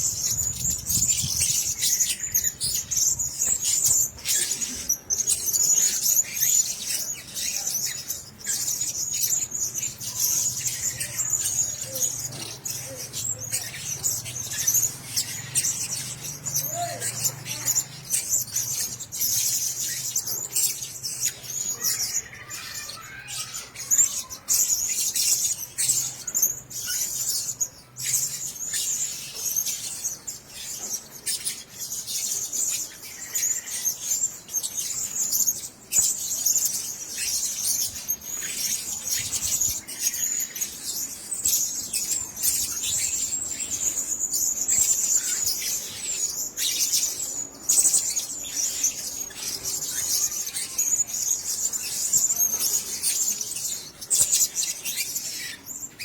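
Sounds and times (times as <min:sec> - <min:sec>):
parrots chattering: 0:00.0 - 0:56.0.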